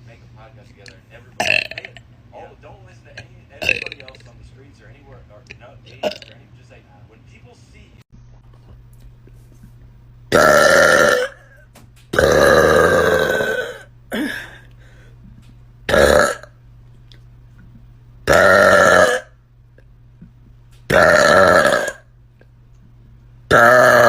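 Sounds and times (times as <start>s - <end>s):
person burping loudly: 1.4s - 2.0s, 3.6s - 4.1s, 6.0s - 6.4s, 10.3s - 11.6s, 12.2s - 14.6s, 15.9s - 16.5s, 18.3s - 19.4s, 20.9s - 22.0s, 23.5s - 24.0s.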